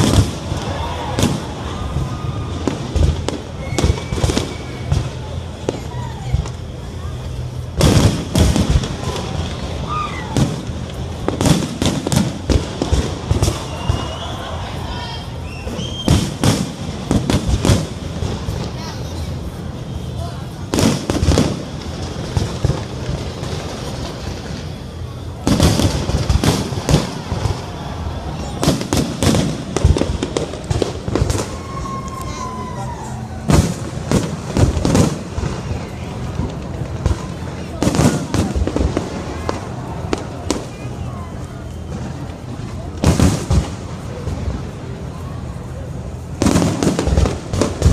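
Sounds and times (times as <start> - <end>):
fireworks bangs and crackles: 0.0 - 47.9.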